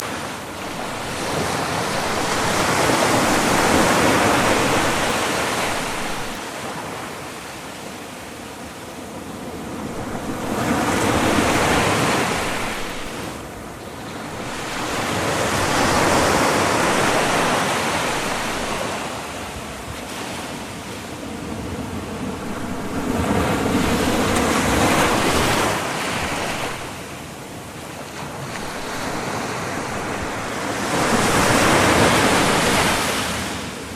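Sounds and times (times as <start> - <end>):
sea waves breaking on shore: 0.0 - 33.9.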